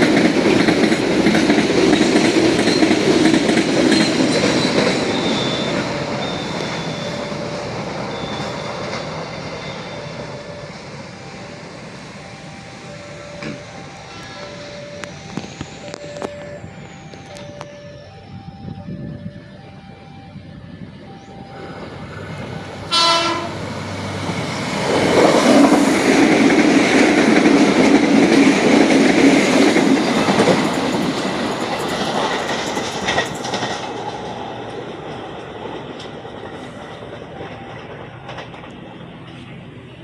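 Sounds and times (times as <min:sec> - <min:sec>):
train wheels on rails: 0:00.0 - 0:40.0
train horn blast: 0:13.4 - 0:15.1, 0:22.9 - 0:23.8.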